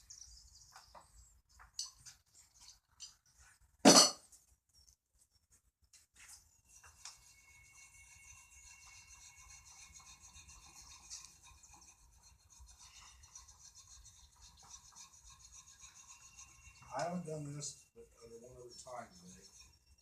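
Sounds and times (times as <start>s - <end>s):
wire brush scrubbing steel: 6.7s - 20.0s.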